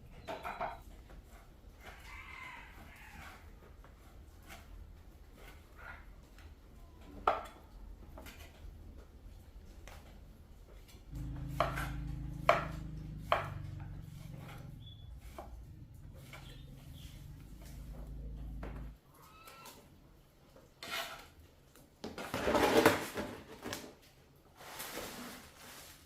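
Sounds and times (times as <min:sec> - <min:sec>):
low steady hum: 0:11.1 - 0:19.0.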